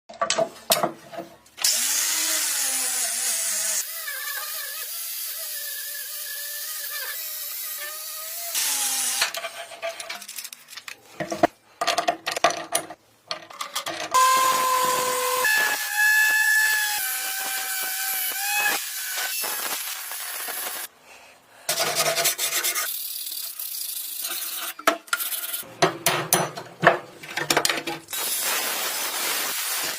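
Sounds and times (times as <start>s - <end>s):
power tool motor whining: 14.2s - 20.9s.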